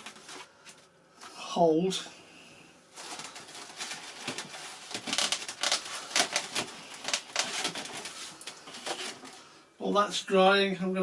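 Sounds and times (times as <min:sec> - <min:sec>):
scraping rustles: 0:02.9 - 0:09.5.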